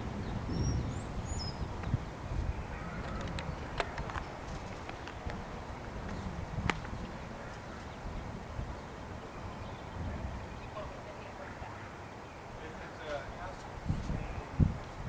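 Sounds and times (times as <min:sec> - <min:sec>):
wind rumbling on microphone: 0:00.0 - 0:15.0
high bird chirps: 0:00.2 - 0:05.9.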